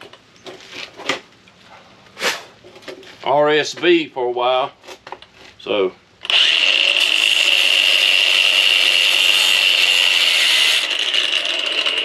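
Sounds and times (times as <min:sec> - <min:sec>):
angle grinder cutting metal: 0:06.2 - 0:12.0.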